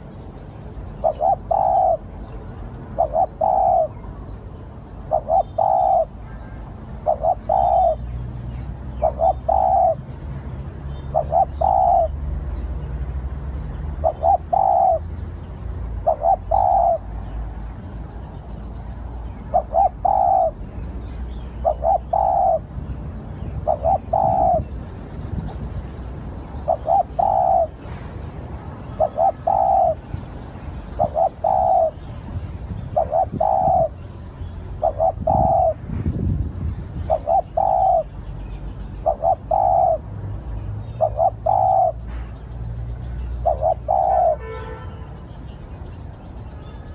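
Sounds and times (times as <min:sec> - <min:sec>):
small bird chirping: 0:00.0 - 0:06.4, 0:07.1 - 0:12.7, 0:13.5 - 0:22.7, 0:23.3 - 0:46.9
dove cooing: 0:00.9 - 0:02.1, 0:03.0 - 0:04.0, 0:05.0 - 0:08.2, 0:09.0 - 0:10.0, 0:11.0 - 0:12.2, 0:14.0 - 0:15.1, 0:16.0 - 0:17.1, 0:19.4 - 0:20.6, 0:21.6 - 0:22.7, 0:23.5 - 0:32.1, 0:32.7 - 0:34.0, 0:34.7 - 0:35.8, 0:37.0 - 0:38.1, 0:39.0 - 0:40.1, 0:41.0 - 0:42.0, 0:43.4 - 0:44.8.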